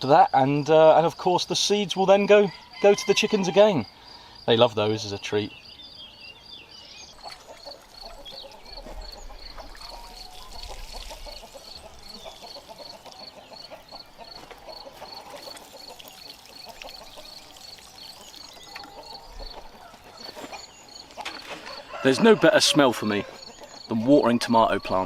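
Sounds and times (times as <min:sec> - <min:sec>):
water pouring onto plants and soil: 0:09.4 - 0:13.3, 0:14.8 - 0:19.8.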